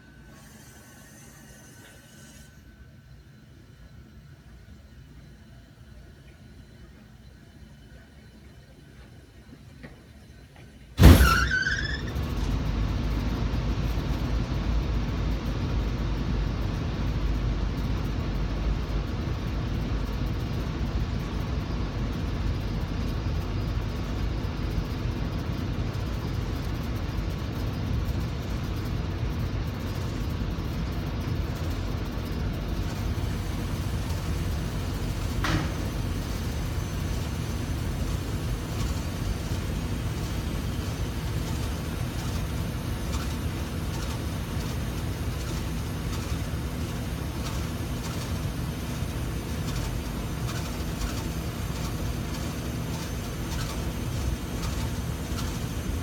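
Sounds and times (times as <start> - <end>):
air conditioner blower rumble: 0.0 - 56.0
loud bang: 11.0 - 11.9.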